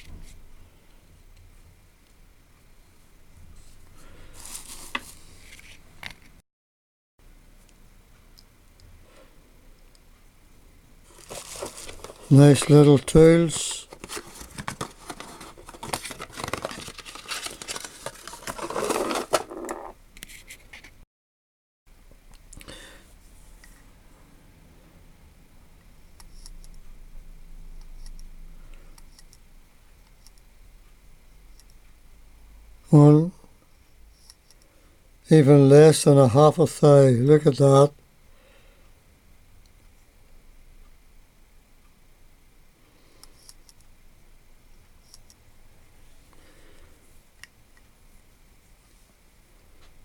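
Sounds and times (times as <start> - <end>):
soft rustle: 3.5 - 5.9, 11.0 - 19.2
low steady hum: 7.2 - 20.4, 21.9 - 50.0.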